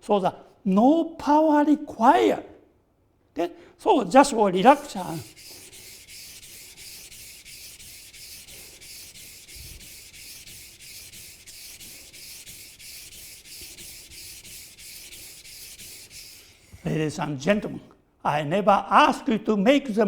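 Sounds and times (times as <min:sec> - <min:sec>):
knife scraping on sharpening stone: 0:05.0 - 0:16.9.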